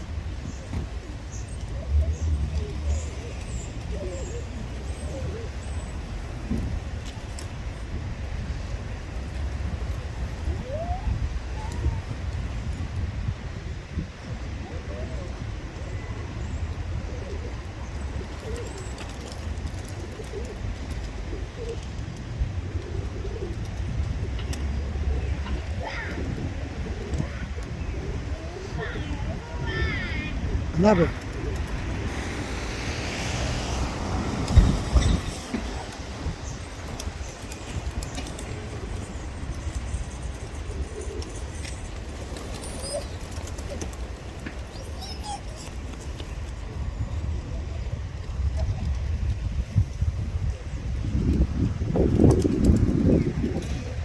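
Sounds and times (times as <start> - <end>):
pigeons cooing: 0.2 - 6.4, 14.6 - 46.8
wings fluttering and clicks: 17.4 - 28.4, 33.8 - 46.7.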